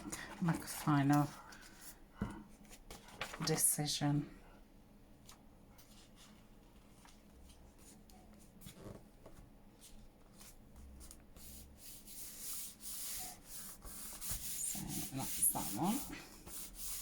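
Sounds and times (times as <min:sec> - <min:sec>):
paper rustling and rubbing: 0:02.6 - 0:03.6, 0:05.3 - 0:17.0.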